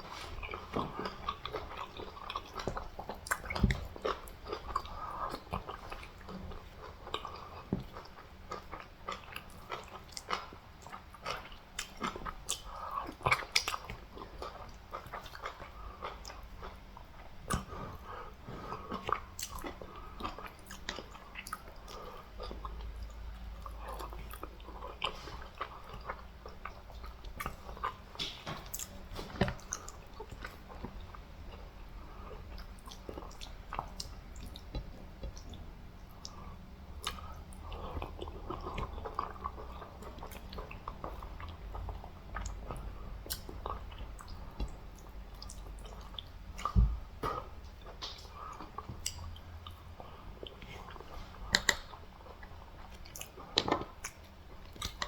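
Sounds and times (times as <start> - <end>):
person chewing food: 0.0 - 55.0
wet mouth clicks and smacks: 51.5 - 51.9.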